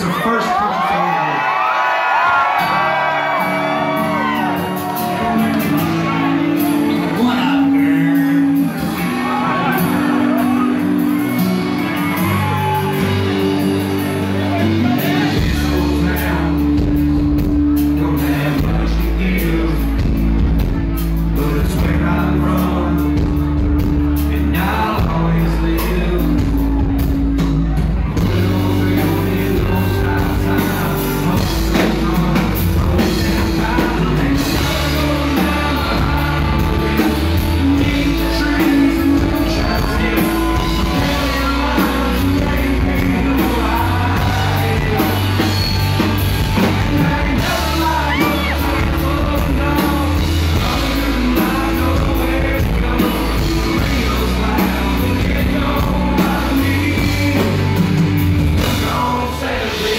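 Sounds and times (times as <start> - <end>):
people yelling: 0.0 - 7.1, 8.8 - 15.3, 39.4 - 49.8
live band playing: 0.0 - 59.9
person singing: 2.6 - 59.9.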